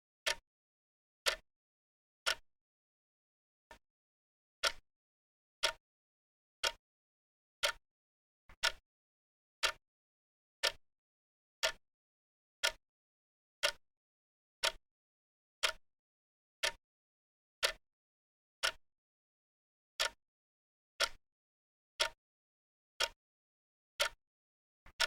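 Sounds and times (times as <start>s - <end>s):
clock ticking: 1.2s - 1.4s, 8.5s - 8.8s, 21.0s - 21.2s.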